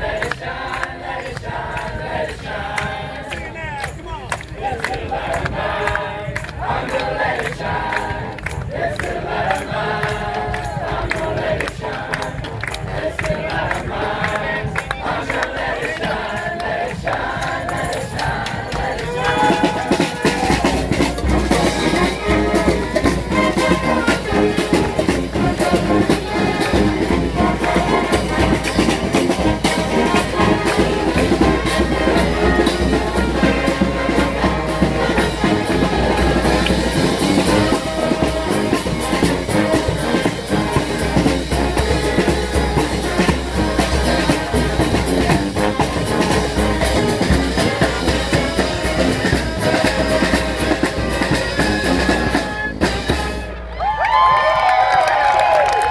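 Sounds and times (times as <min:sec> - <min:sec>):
brass band playing: 0:04.8 - 0:53.9.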